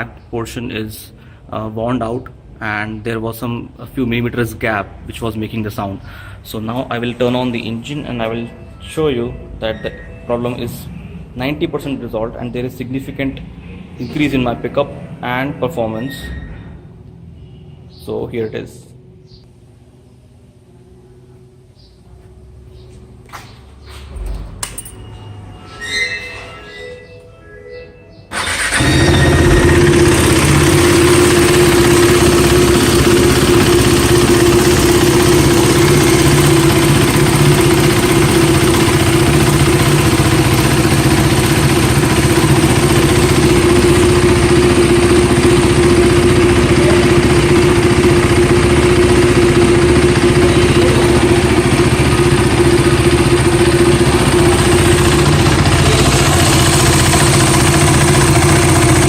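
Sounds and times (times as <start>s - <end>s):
motorcycle engine idling: 28.3s - 59.0s.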